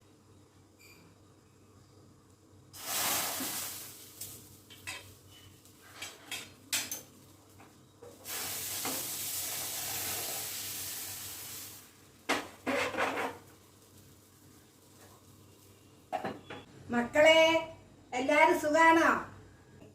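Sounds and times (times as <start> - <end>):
food sizzling in a pan: 2.7 - 16.3.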